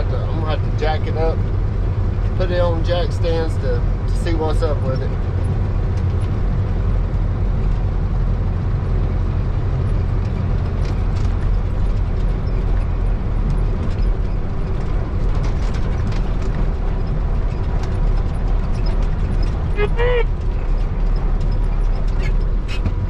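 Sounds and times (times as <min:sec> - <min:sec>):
diesel truck engine rumbling: 0:00.0 - 0:23.0
faint rattles and clicks: 0:04.1 - 0:06.8, 0:08.8 - 0:23.0.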